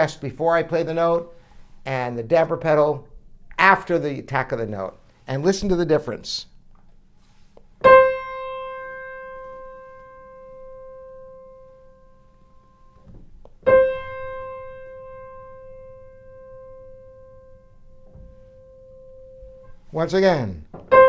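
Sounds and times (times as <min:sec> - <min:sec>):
grand piano note ringing: 0:07.8 - 0:13.0, 0:13.6 - 0:19.9.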